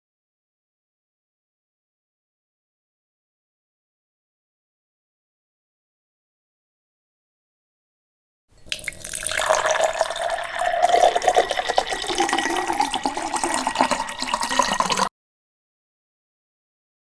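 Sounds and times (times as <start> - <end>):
drink poured into a glass: 8.6 - 15.1.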